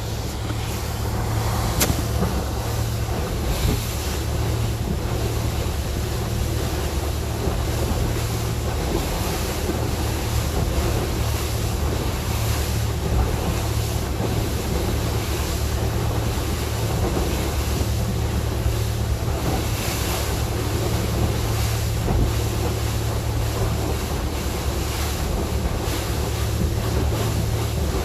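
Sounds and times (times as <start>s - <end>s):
boat motor humming: 0.0s - 28.0s
water rushing: 0.0s - 28.0s
wind buffeting microphone: 0.0s - 28.0s
sharp click: 1.8s - 2.0s.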